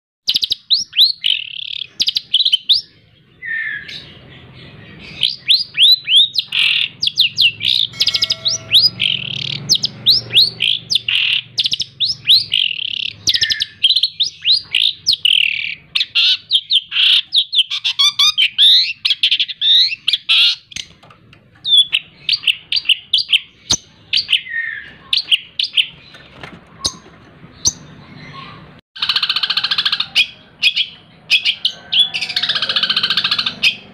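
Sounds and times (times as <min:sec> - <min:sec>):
shrike singing rapid song: 0:00.3 - 0:21.0.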